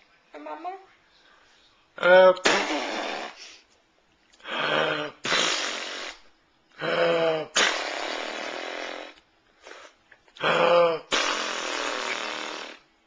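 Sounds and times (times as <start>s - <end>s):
pretend sneezes: 2.0s - 3.6s, 4.5s - 6.2s, 6.8s - 12.8s.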